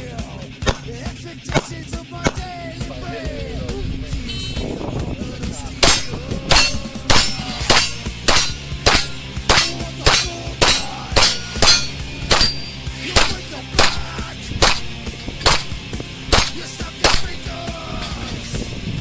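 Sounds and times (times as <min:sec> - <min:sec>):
heavy metal music: 0:00.0 - 0:19.0.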